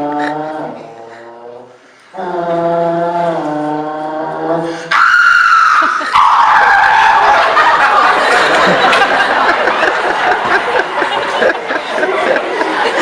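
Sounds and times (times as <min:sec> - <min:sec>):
audience laughter: 0:05.8 - 0:13.0.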